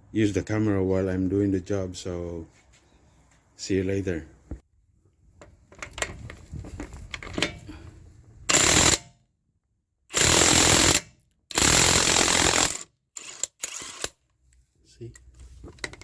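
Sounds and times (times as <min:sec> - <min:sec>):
light clattering of wrench on nut: 0:15.1 - 0:16.0.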